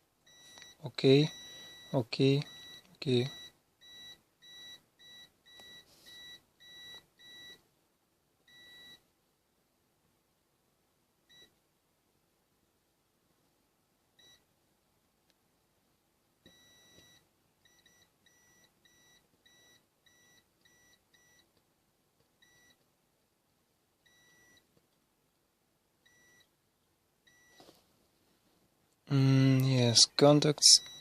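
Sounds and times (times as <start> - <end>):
multimeter continuity beeps: 0.3 - 7.6, 8.5 - 9.0, 14.2 - 14.4, 16.5 - 21.5, 22.4 - 22.8, 24.1 - 24.7, 26.0 - 26.5, 27.3 - 27.6, 30.6 - 31.0.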